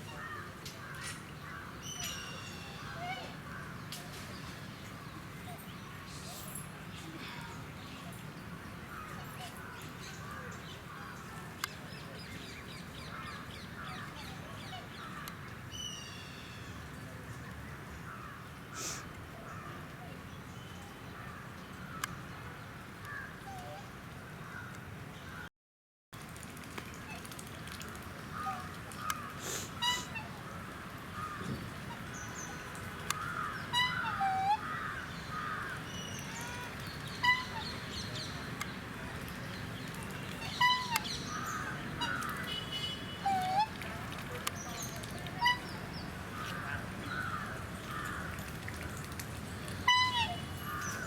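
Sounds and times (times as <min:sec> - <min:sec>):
swans honking: 0:28.3 - 0:38.6, 0:40.1 - 0:48.2, 0:49.8 - 0:51.0
swan bugling call: 0:29.6 - 0:30.4, 0:33.2 - 0:35.5, 0:36.3 - 0:37.8, 0:40.4 - 0:43.8, 0:45.3 - 0:45.8, 0:49.8 - 0:51.0.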